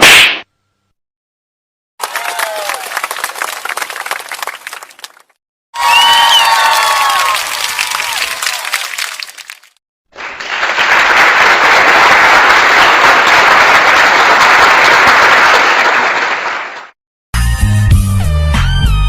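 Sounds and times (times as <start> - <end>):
crowd applause: 2.0 - 17.0.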